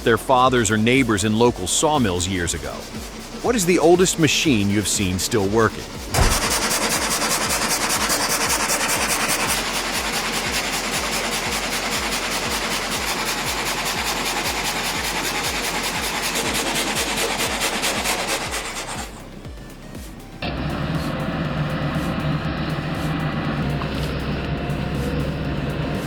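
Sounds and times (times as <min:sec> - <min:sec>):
low rhythmic thumping: 0:00.0 - 0:26.0
saw rasping through wood: 0:00.8 - 0:19.2.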